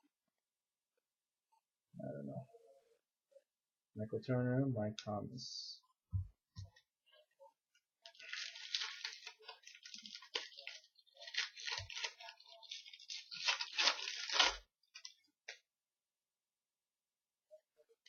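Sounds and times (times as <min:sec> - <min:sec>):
wrapper tearing and crinkling: 0:08.1 - 0:15.2.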